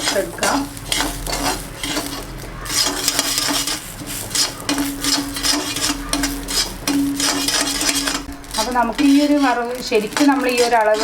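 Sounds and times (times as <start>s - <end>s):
light sizzle: 0.0s - 11.0s
spoon scraping rice in a pan: 0.0s - 11.0s.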